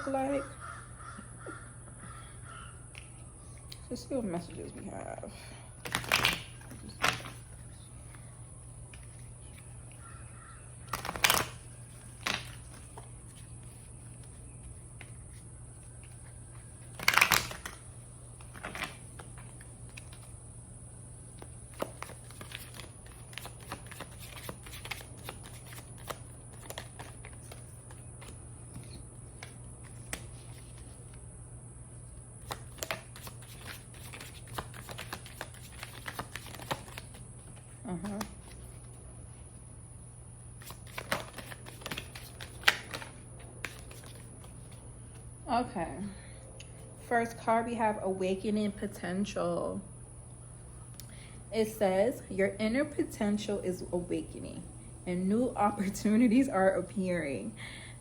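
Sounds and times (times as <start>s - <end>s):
bird calling: 0.0s - 2.9s, 9.9s - 10.9s
faint low hum: 0.0s - 58.0s
cards shuffling: 5.8s - 10.0s, 10.8s - 20.4s, 21.2s - 31.2s, 32.4s - 39.0s, 40.6s - 45.3s.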